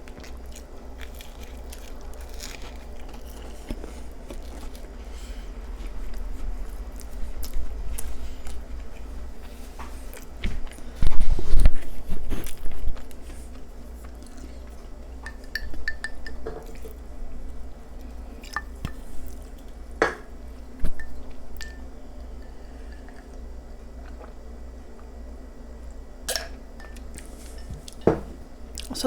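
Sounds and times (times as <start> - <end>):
wet chewing: 0.0 - 10.9.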